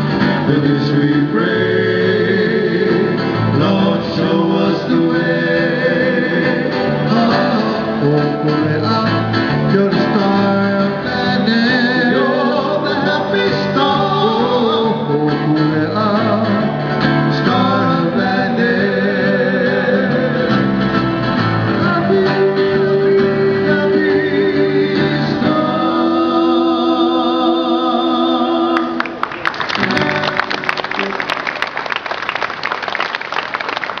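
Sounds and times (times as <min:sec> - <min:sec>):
person singing: 0:00.4 - 0:21.0, 0:21.6 - 0:29.2
audience applause: 0:29.0 - 0:34.0.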